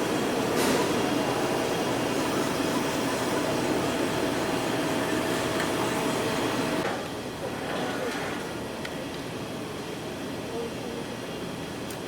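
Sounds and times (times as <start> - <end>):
faint steady whine: 0.0 - 7.7
machine running noise: 0.0 - 10.5.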